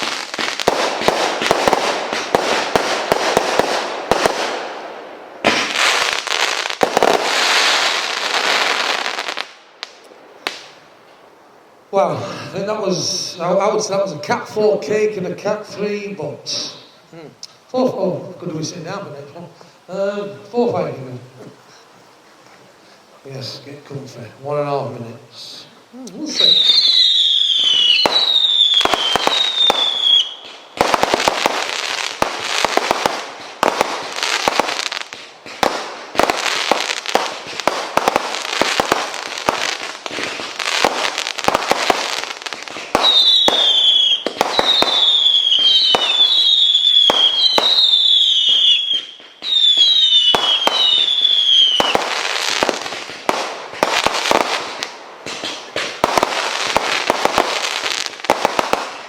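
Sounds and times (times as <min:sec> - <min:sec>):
firework barrage of rapid bangs: 0:00.0 - 0:04.8, 0:27.7 - 0:59.0
descending firework whistles: 0:26.2 - 0:31.5, 0:42.6 - 0:53.1.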